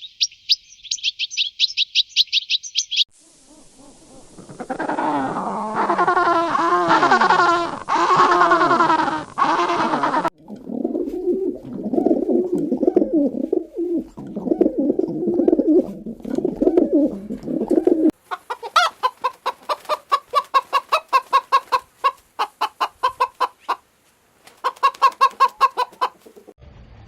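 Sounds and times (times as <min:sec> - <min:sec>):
animal call: 0:03.2 - 0:10.3
pigeons cooing: 0:03.4 - 0:21.8, 0:24.7 - 0:26.5
chickens clucking: 0:03.5 - 0:26.6.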